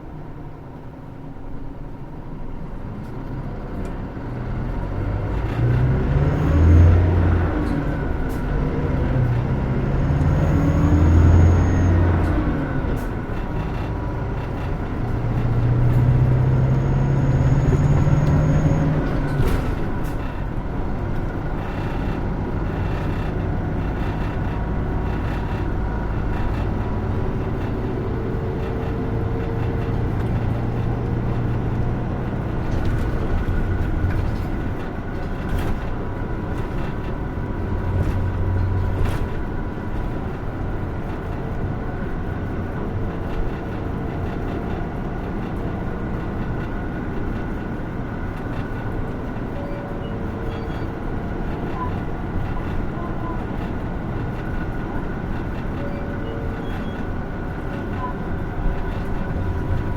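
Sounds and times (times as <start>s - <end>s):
bus engine drone: 0.0s - 59.9s
road noise: 0.0s - 59.9s.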